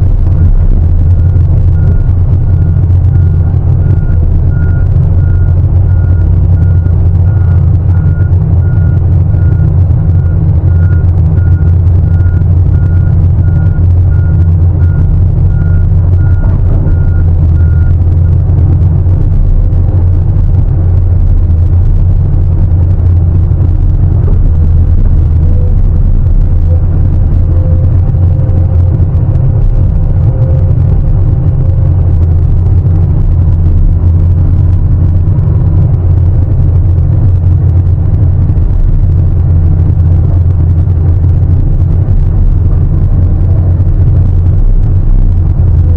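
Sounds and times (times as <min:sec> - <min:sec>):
diesel engine running: 0:00.0 - 0:45.9
reversing alarm beeping: 0:00.1 - 0:36.0.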